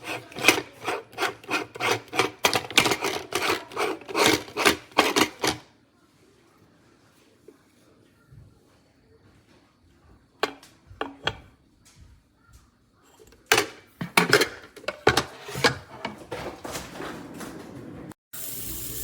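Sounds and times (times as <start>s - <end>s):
knocks of hard objects: 10.4s - 11.5s, 13.2s - 17.0s.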